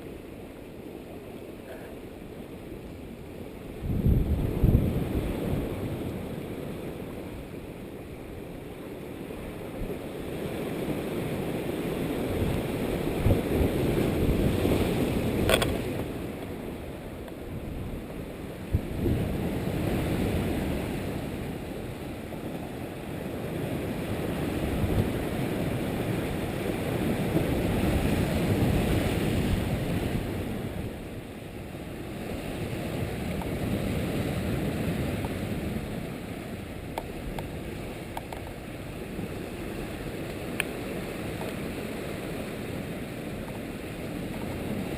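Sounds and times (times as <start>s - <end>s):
strong wind on microphone: 3.7s - 6.4s, 11.0s - 21.4s, 23.5s - 31.2s.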